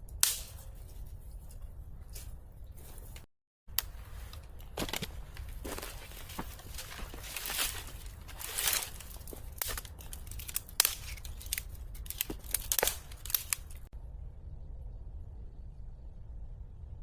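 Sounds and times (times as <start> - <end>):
crisp snipping sounds: 3.7 - 13.9.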